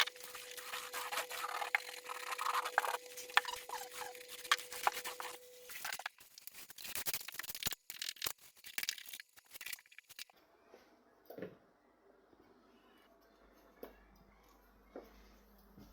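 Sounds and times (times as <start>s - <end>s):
wallpaper scraping and ripping: 0.0s - 10.3s.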